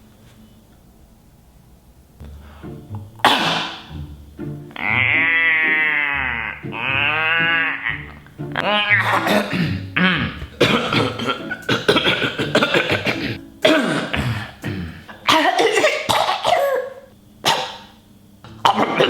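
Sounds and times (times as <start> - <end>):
man coughing hard: 3.2 - 3.9, 8.9 - 17.9.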